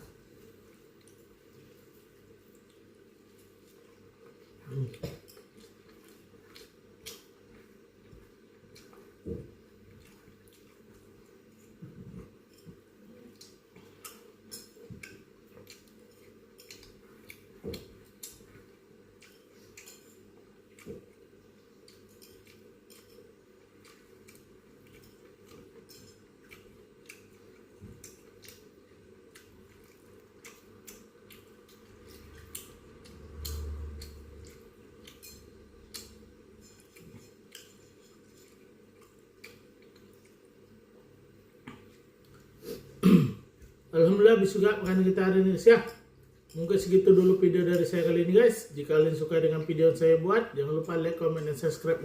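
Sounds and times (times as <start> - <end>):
close-miked chewing: 0.2 - 40.9.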